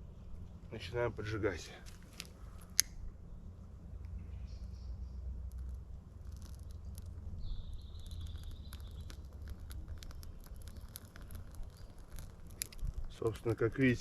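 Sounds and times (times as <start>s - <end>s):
fire crackling: 5.2s - 14.0s.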